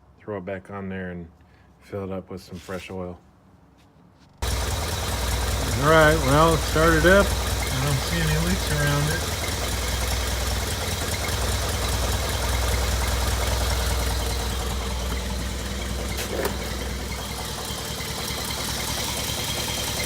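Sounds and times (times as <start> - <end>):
car engine idling: 4.4 - 20.0.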